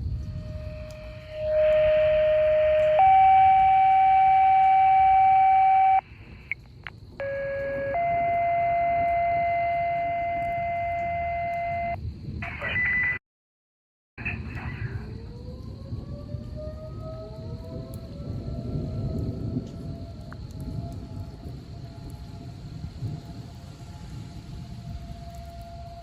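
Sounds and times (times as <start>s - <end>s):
steady electronic tones: 0.0s - 6.5s, 7.2s - 12.0s.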